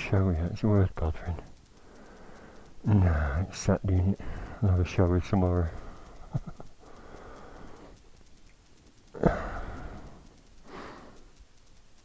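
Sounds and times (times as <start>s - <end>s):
person breathing: 1.8s - 3.4s, 4.2s - 4.7s, 6.8s - 8.0s, 9.2s - 11.4s.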